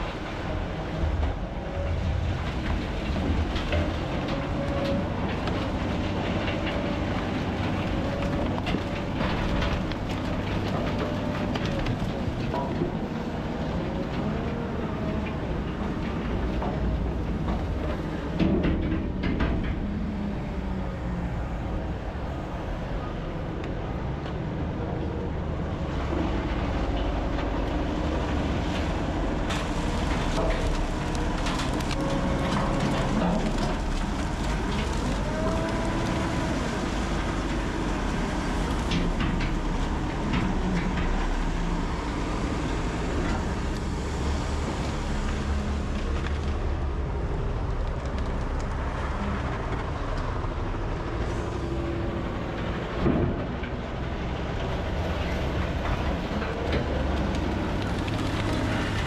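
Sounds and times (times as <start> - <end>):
wheel loader running: 0.0 - 59.0
knocks and clatter: 15.2 - 20.3.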